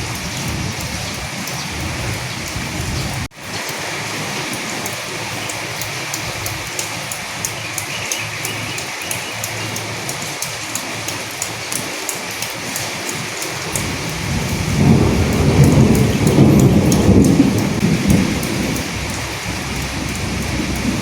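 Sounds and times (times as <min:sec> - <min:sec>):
rolling thunder rumble: 0:00.0 - 0:03.3, 0:13.7 - 0:21.0
steady rain falling: 0:00.0 - 0:21.0.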